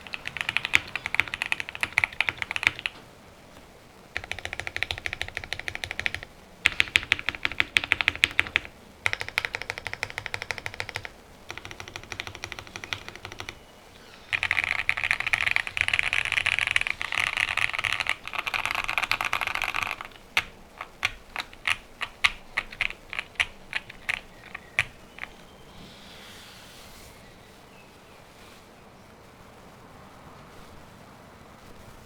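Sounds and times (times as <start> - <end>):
typing on mechanical keyboard: 0.0 - 25.4.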